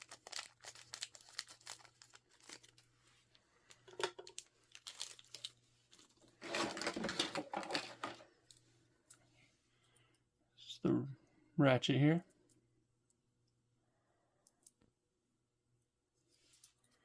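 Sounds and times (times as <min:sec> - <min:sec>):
toy packaging crinkling: 0:00.0 - 0:08.2.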